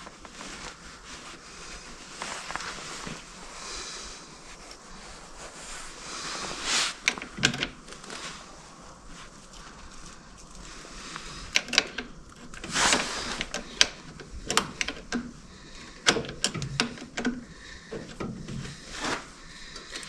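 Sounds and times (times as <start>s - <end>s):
short scrape: 12.6s - 13.4s, 18.7s - 19.3s
metallic clicks and knocks: 13.4s - 15.3s, 16.0s - 17.4s.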